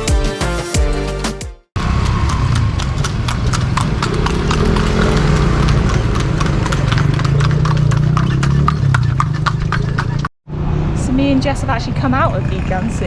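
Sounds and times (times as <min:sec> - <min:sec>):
horse hooves on hard road: 0:01.8 - 0:10.3.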